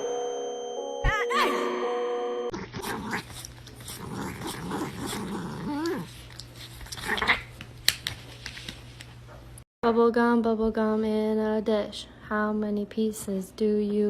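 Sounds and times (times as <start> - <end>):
dog growling: 2.5 - 6.2
dog whining: 2.5 - 6.2.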